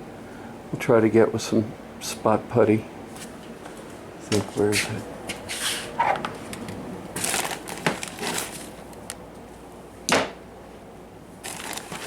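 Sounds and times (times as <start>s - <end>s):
crinkling rustles: 3.1s - 9.2s, 11.4s - 12.0s.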